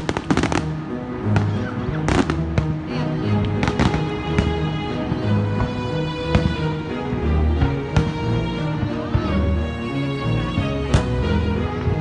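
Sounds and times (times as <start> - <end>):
fireworks bangs: 0.0 - 2.9, 3.5 - 6.7, 10.5 - 11.2
music with held notes: 0.0 - 12.0.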